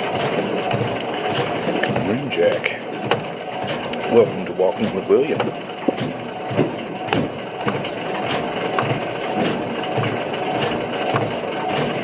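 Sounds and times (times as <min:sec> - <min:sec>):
constant rubbing noise: 0:00.0 - 0:12.0
footsteps walking: 0:05.4 - 0:10.2.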